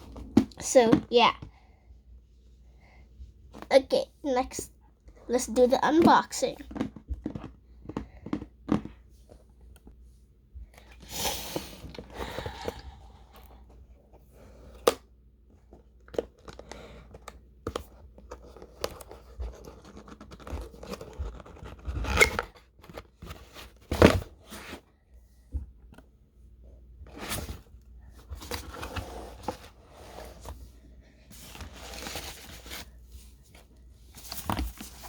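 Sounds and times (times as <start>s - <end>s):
cardboard and plastic rustling: 15.5s - 24.9s, 27.0s - 35.0s.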